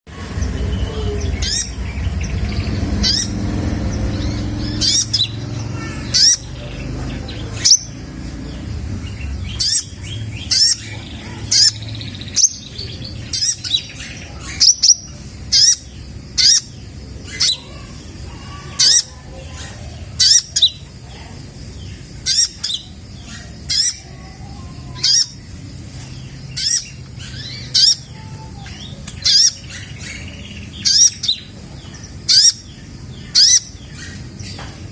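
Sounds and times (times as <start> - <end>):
sunbird high sharp chirps: 0.1 - 34.9.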